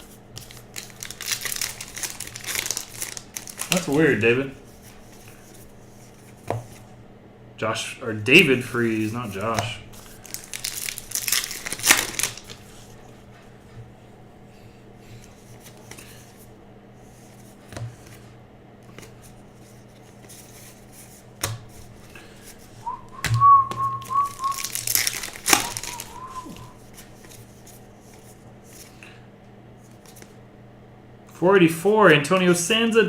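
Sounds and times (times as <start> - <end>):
foil wrapper crinkling and tearing: 0.0 - 4.4, 8.8 - 12.8, 24.1 - 27.4
person whistling: 22.8 - 24.7, 25.5 - 26.8.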